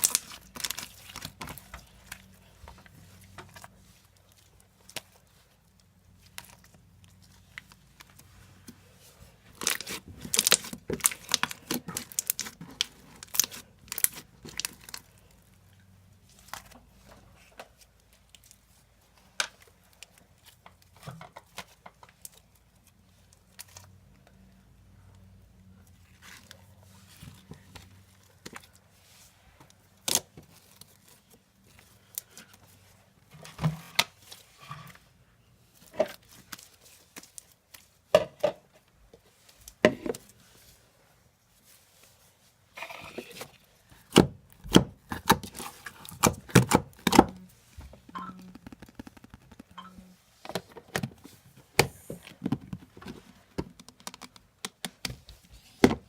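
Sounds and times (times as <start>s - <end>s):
slime crackling and tearing: 0.0s - 2.2s, 9.5s - 15.3s.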